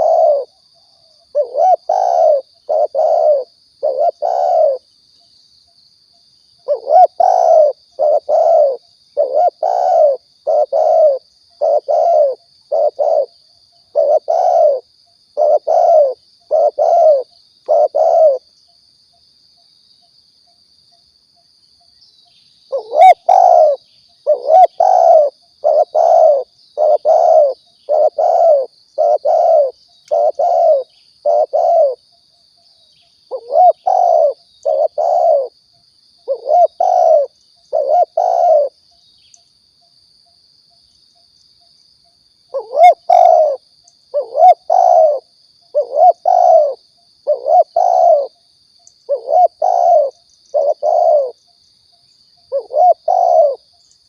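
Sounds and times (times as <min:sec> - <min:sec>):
dove cooing: 0:00.0 - 0:00.6, 0:01.2 - 0:04.9, 0:06.6 - 0:18.5, 0:22.7 - 0:32.0, 0:33.3 - 0:35.6, 0:36.2 - 0:38.8, 0:42.5 - 0:48.4, 0:49.1 - 0:51.4, 0:52.5 - 0:53.7.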